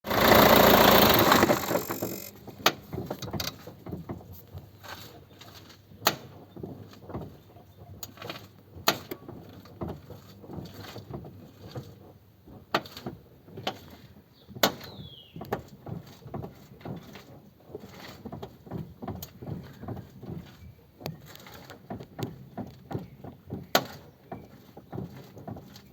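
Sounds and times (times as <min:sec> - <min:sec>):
steering clunks and knocks: 0:14.6 - 0:25.9.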